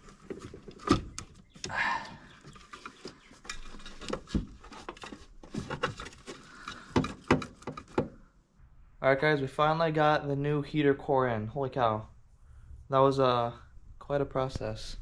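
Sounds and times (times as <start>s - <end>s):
parts clicking and knocking: 0.0s - 8.3s.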